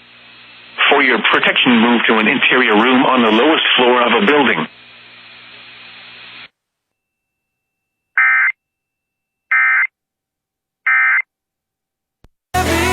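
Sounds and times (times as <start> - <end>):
screechy digital data bursts: 8.2 - 8.6.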